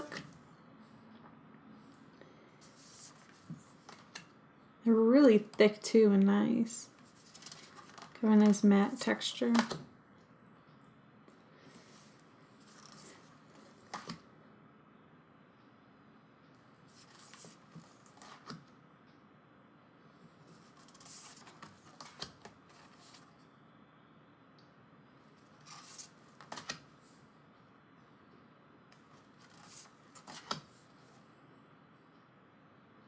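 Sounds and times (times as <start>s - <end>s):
postcards sliding: 25.6s - 26.8s.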